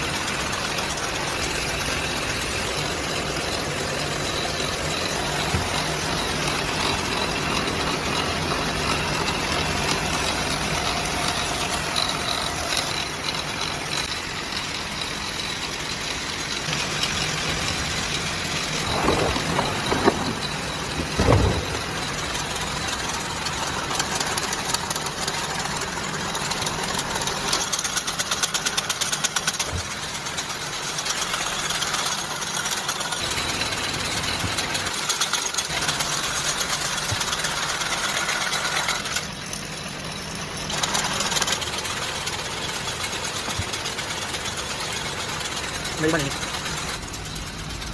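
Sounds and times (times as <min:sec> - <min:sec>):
factory machinery clatter: 0:00.0 - 0:47.9
fast ticking rattle: 0:00.0 - 0:47.9
low hum: 0:00.0 - 0:47.9
knocks: 0:21.1 - 0:21.9.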